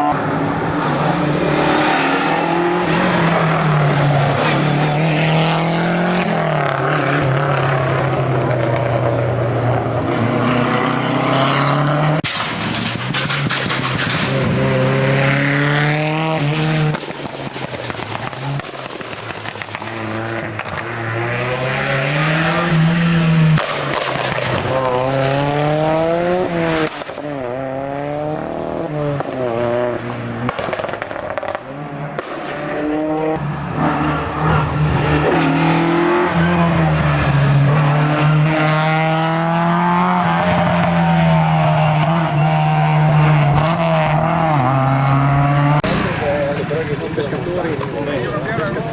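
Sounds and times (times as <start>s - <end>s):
rally car engines revving: 0.0s - 48.9s.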